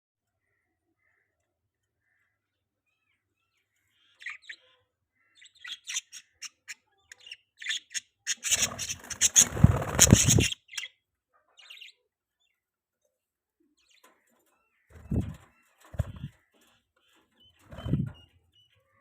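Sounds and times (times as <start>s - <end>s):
budgies chirping: 3.5s - 12.5s, 13.8s - 19.0s.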